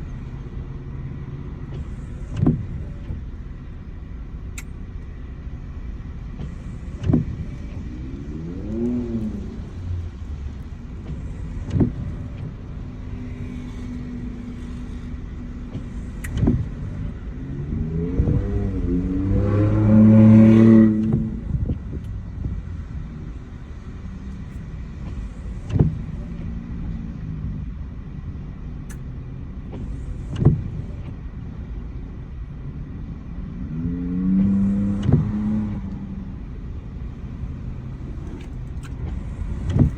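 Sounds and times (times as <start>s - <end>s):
car road noise: 0.0s - 39.9s
sharp click: 16.1s - 16.6s.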